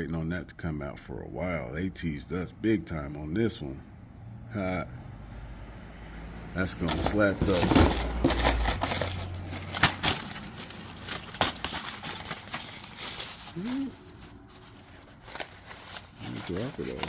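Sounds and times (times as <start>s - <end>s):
packaging clicking and rustling: 6.8s - 17.0s
person humming: 13.5s - 14.2s.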